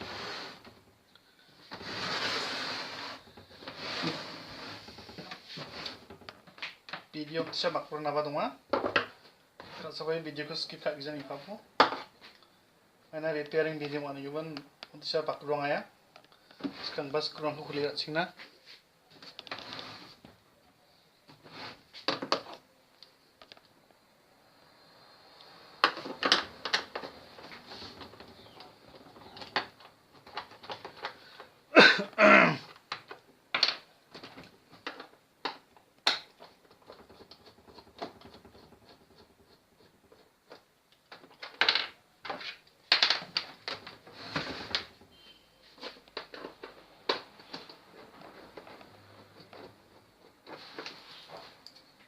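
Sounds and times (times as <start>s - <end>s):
plastic scrape: 0.0s - 0.8s, 1.6s - 6.4s, 19.3s - 20.3s, 43.4s - 51.5s.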